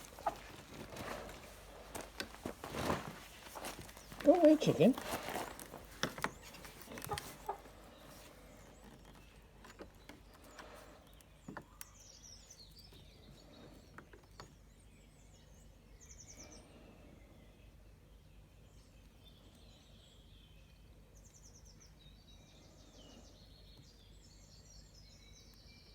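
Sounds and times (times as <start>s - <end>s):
handling clicks and knocks: 0.0s - 7.6s.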